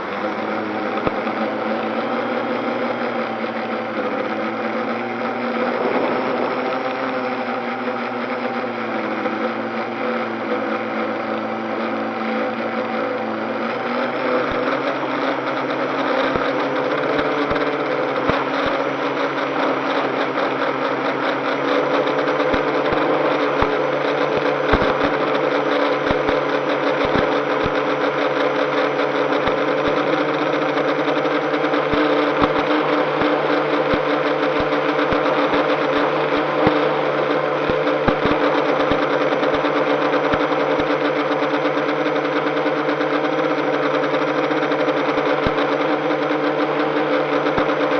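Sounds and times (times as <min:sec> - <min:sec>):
drone motors whirring: 0:00.0 - 0:47.9.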